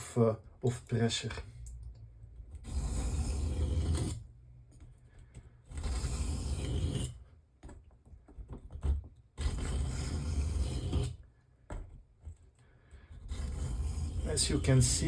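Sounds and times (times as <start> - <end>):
knife scraping on sharpening stone: 2.6 - 4.2, 5.7 - 7.2, 9.4 - 11.2.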